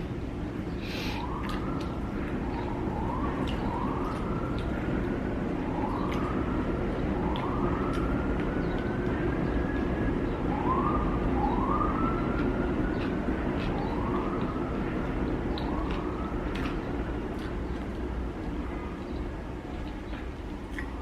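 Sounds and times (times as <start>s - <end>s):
emergency siren wailing: 1.0s - 17.3s.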